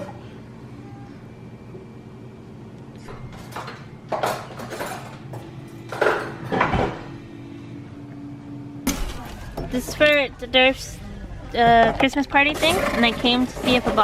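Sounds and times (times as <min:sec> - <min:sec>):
low steady hum: 0:00.0 - 0:14.0.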